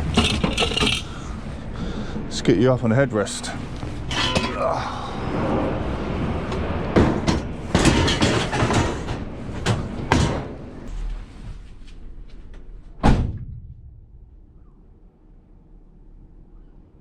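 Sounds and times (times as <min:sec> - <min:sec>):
scrap items clattering: 0:00.0 - 0:01.3, 0:04.0 - 0:04.7, 0:07.1 - 0:10.4.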